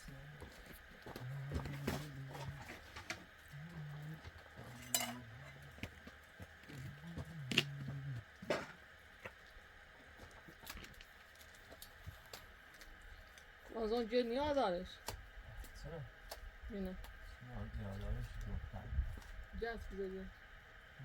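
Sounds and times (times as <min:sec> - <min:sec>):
low hum: 0:00.0 - 0:21.0
metallic clinks and knocks: 0:04.7 - 0:05.2.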